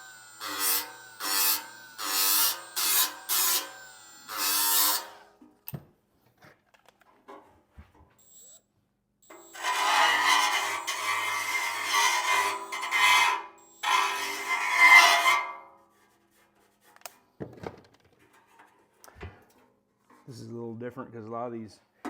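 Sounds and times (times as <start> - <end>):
metal scraping on metal: 9.4 - 15.7.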